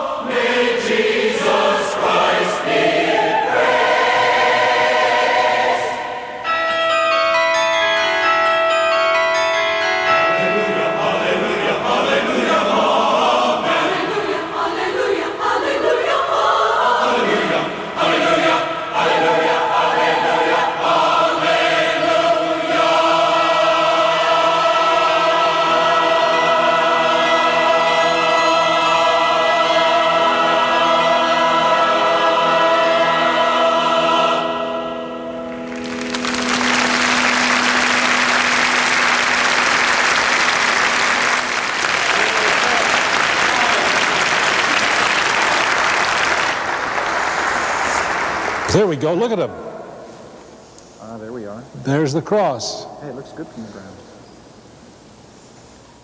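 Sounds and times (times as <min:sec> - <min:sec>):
choir singing: 0:00.0 - 0:07.5, 0:10.0 - 0:46.9
audience applause: 0:35.7 - 0:49.0.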